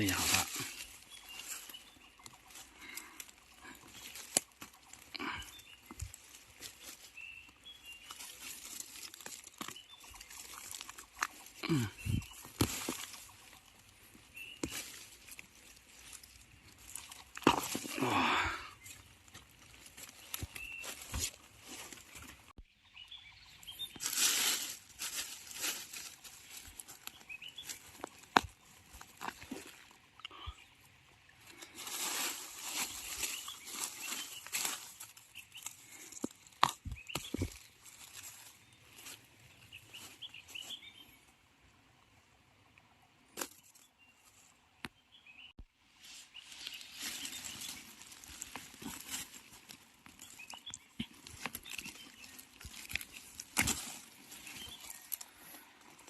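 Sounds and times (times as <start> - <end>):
leaves and undergrowth rustling: 0.0 - 41.3, 45.3 - 56.0
bird chirping: 6.7 - 8.4, 9.5 - 14.7, 20.2 - 21.0, 22.0 - 24.0, 54.2 - 55.6
bird chirps: 22.0 - 24.0.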